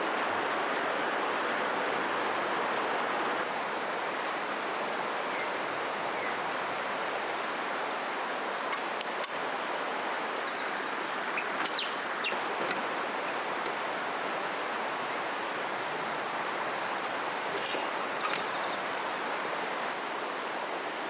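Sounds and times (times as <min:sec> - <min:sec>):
river water rushing: 0:00.0 - 0:21.0
bird chirps: 0:10.0 - 0:12.4, 0:17.5 - 0:19.4.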